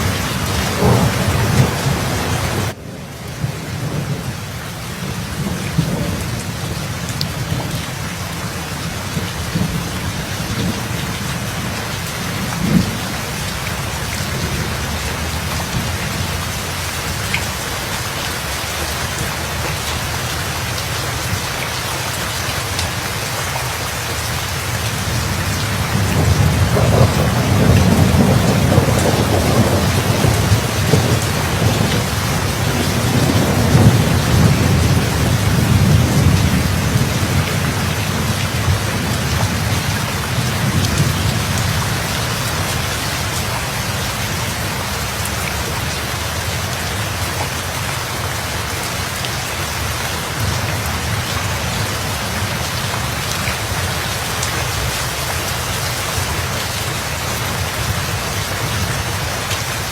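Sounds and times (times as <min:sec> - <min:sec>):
thunder rumbling: 0:00.0 - 0:20.6, 0:24.6 - 0:45.2
heavy rain: 0:00.0 - 0:59.9.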